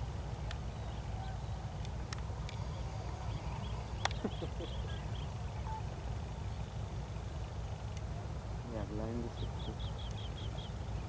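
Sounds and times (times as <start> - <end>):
faint bird chirps: 9.1 - 11.0.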